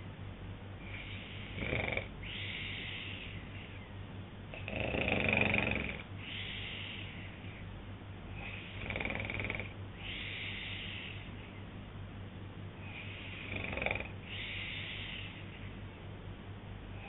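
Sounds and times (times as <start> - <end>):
soft breath: 0.8 - 1.6, 2.2 - 3.9, 6.2 - 7.7, 10.0 - 11.6, 12.8 - 13.6, 14.2 - 15.8
man snoring: 0.8 - 3.1, 4.5 - 6.8, 8.3 - 10.9, 12.9 - 15.0.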